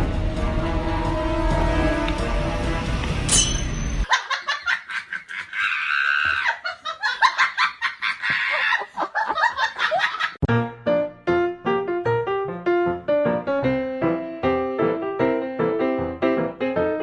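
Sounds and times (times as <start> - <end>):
music: 0.0 - 4.1, 10.5 - 17.0
piano music: 0.0 - 4.1, 10.4 - 17.0
person laughing hard: 4.1 - 10.4.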